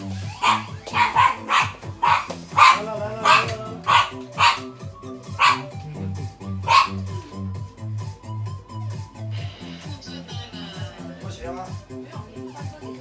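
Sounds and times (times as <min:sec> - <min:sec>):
background music with bass line: 0:00.0 - 0:13.0
dog barking: 0:00.4 - 0:05.8, 0:06.6 - 0:07.2.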